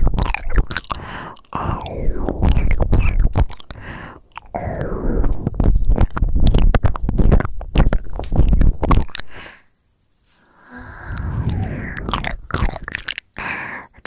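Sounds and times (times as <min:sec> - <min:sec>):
wet mouth clicks and smacks: 0:00.0 - 0:09.5, 0:12.0 - 0:14.0
soft breath: 0:03.7 - 0:04.3, 0:09.3 - 0:12.5, 0:13.3 - 0:14.0.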